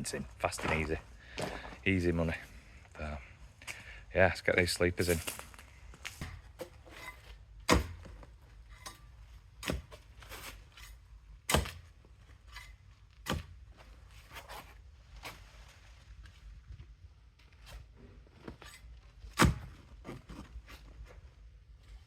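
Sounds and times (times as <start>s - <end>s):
spade striking soil: 6.1s - 13.6s.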